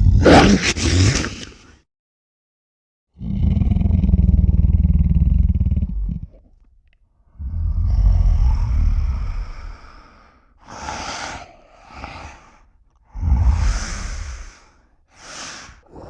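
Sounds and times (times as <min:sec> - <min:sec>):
breathy monster huffs: 0:07.3 - 0:16.0
monster roaring: 0:07.4 - 0:10.0, 0:13.1 - 0:14.8.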